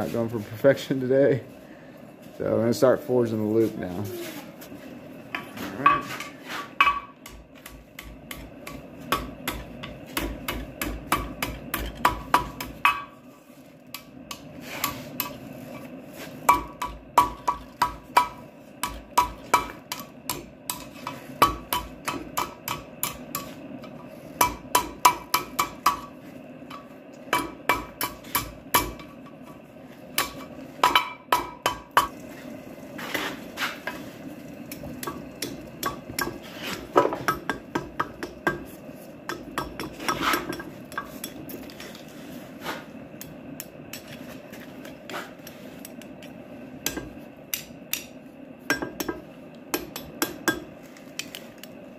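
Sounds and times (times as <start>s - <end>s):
hammer striking steel on anvil: 6.8s - 13.1s, 16.5s - 23.6s, 24.4s - 26.1s, 26.7s - 29.1s, 30.2s - 32.1s, 37.2s - 38.7s, 39.3s - 41.4s, 48.7s - 50.7s.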